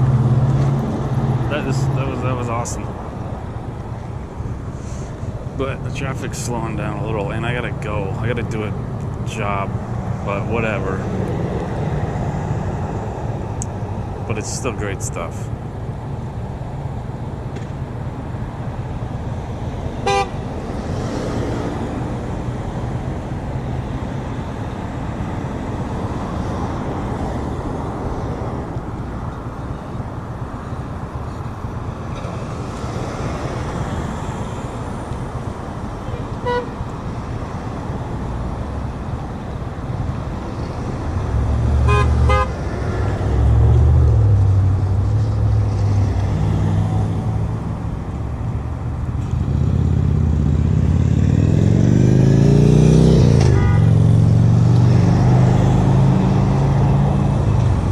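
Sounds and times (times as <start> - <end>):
road traffic passing: 0.0 - 57.9
car horns tooting: 20.0 - 20.4, 36.2 - 36.8, 41.8 - 42.6, 53.4 - 54.0.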